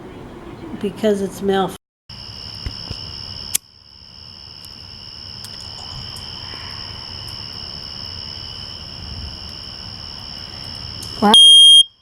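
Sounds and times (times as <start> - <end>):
smoke detector high-pitched tone: 11.2 - 12.0.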